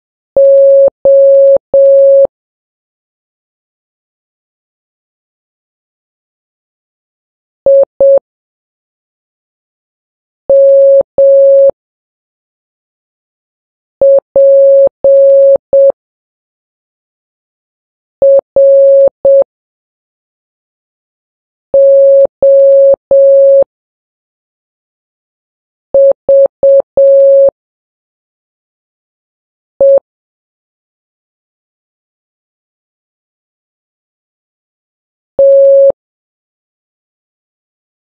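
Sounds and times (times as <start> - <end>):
morse code beeps: 0.4 - 2.3, 7.7 - 8.2, 10.5 - 11.7, 14.0 - 15.9, 18.2 - 19.4, 21.8 - 23.6, 26.0 - 27.5, 29.8 - 30.0, 35.4 - 36.0.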